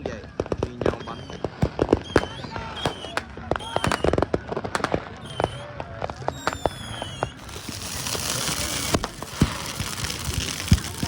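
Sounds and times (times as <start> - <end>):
fireworks pops and crackles: 0.0 - 11.0
firework whistles: 0.5 - 11.0
firework hissing spray: 5.2 - 5.6, 6.2 - 11.0.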